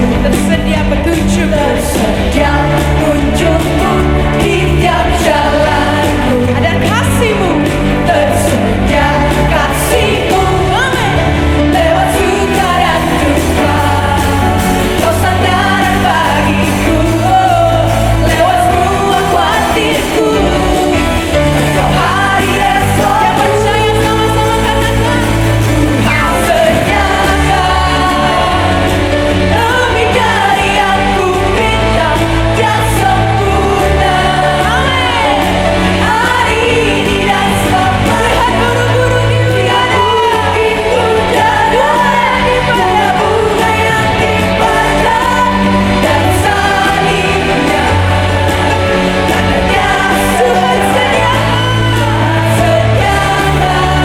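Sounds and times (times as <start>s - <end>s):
steady bass: 0.0s - 54.0s
worship band with singers: 0.0s - 54.0s.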